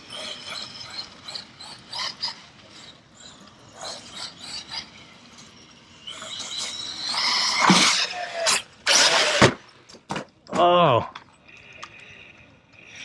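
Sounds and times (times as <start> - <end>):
electric motor whining: 0.0 - 9.6.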